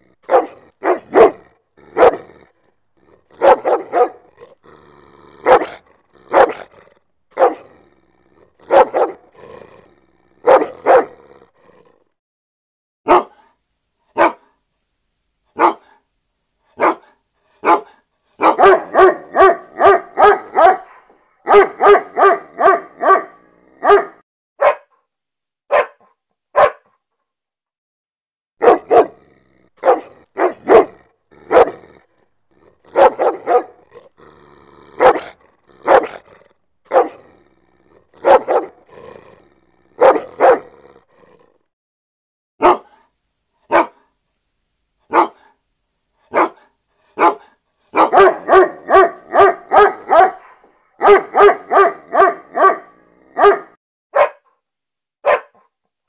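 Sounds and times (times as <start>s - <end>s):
dog barking aggressively: 0.2s - 11.4s, 13.1s - 13.4s, 14.1s - 14.5s, 15.6s - 16.0s, 16.8s - 25.0s, 25.7s - 26.9s, 28.6s - 41.0s, 42.6s - 43.0s, 43.7s - 44.0s, 45.1s - 45.6s, 46.3s - 54.4s, 55.2s - 55.6s.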